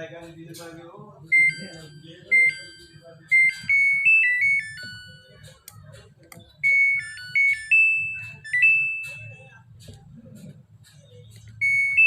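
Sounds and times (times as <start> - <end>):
washing machine buzzer beeping: 1.3 - 5.3, 6.6 - 9.6, 11.6 - 12.0.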